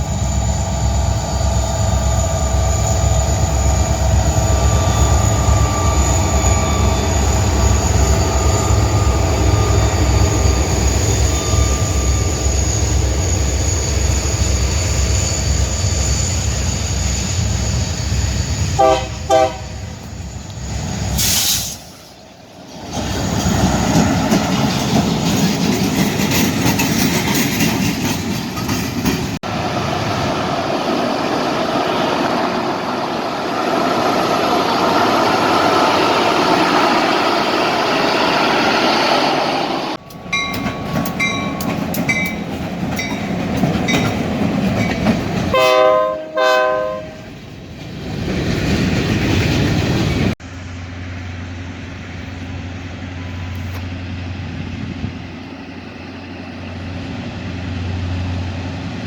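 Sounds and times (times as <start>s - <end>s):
train wheels on rails: 0.0s - 59.0s
locomotive horn blasts: 18.8s - 19.9s, 45.5s - 47.3s
bell ringing: 40.0s - 44.1s.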